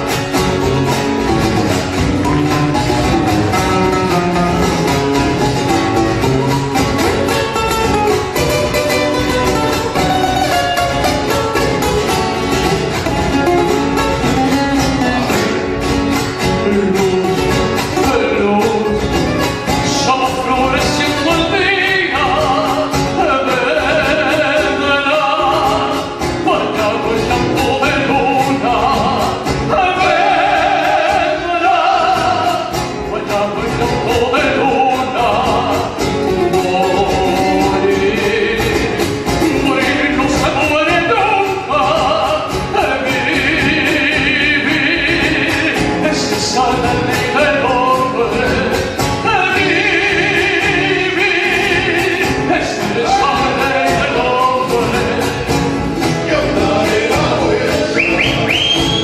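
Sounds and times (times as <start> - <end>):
guitar accompaniment: 0.0 - 59.0
person singing: 16.5 - 59.0.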